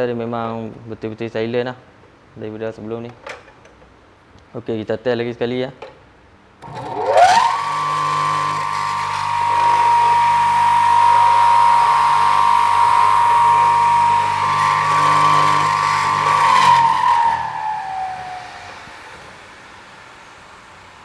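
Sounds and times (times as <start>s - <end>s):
miter saw motor whining: 6.6s - 19.4s.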